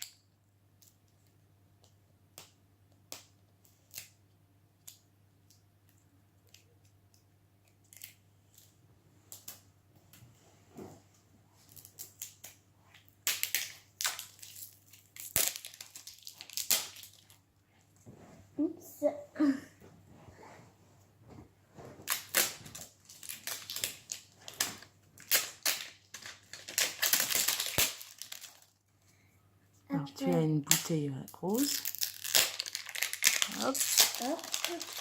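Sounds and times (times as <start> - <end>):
plastic and paper wrapping tearing: 13.2 - 17.4, 22.0 - 28.8, 31.5 - 35.0.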